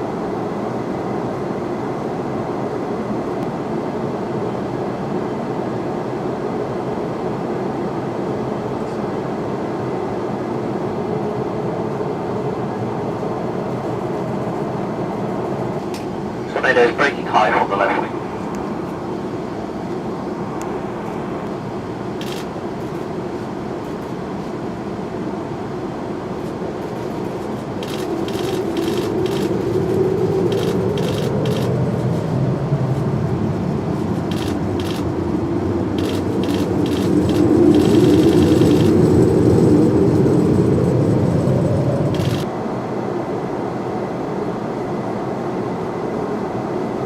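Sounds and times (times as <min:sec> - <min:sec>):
jet engine roaring: 0:10.8 - 0:42.7.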